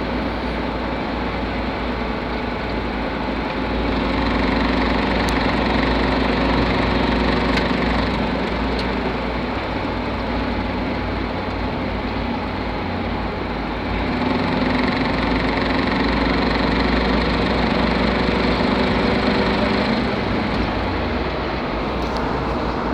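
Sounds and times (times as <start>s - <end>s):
vehicle gearbox running: 4.0s - 9.8s, 14.1s - 22.9s.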